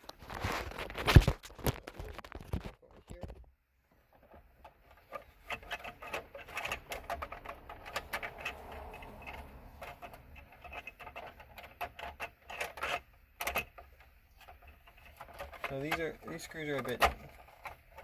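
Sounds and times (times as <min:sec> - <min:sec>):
screwdriver clicking and scraping: 0:04.9 - 0:16.0.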